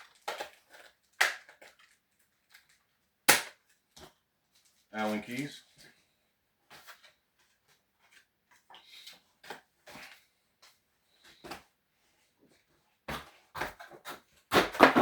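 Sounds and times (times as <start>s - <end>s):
packaging rustling: 0.0s - 3.0s.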